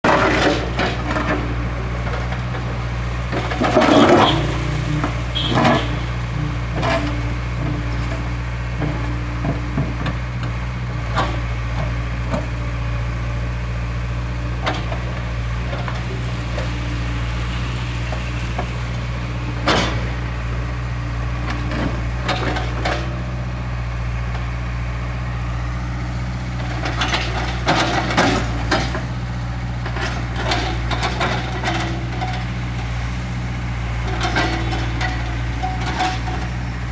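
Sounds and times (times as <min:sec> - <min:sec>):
excavator diesel engine running: 0:00.0 - 0:36.9.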